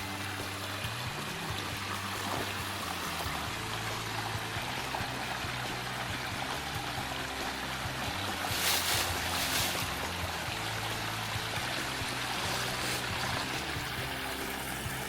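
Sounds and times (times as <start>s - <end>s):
soft background music: 0.0s - 15.0s
steady rushing noise: 8.0s - 15.0s.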